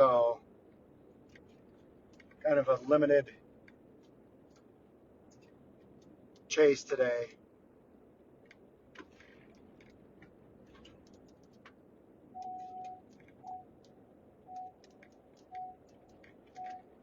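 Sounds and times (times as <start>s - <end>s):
electronic beeps: 12.4s - 13.7s, 14.5s - 14.8s, 15.5s - 15.8s
faint light ticks: 12.4s - 16.9s.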